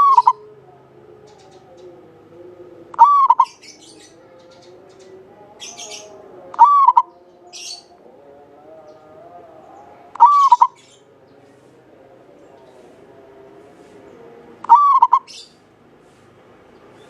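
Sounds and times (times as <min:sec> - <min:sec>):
dove cooing: 0:00.0 - 0:02.1, 0:02.7 - 0:04.5, 0:05.6 - 0:07.9, 0:09.9 - 0:11.0, 0:14.6 - 0:15.5.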